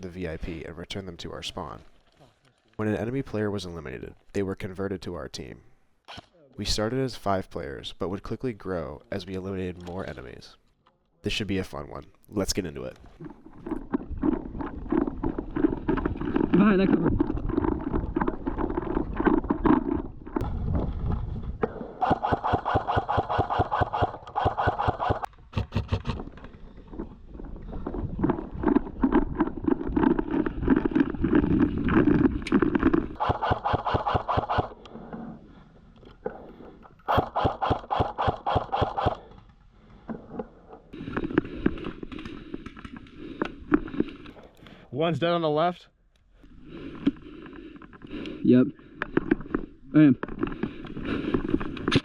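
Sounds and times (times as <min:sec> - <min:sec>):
airsoft guns firing full auto: 0:22.0 - 0:25.3, 0:33.2 - 0:34.7, 0:37.1 - 0:39.2.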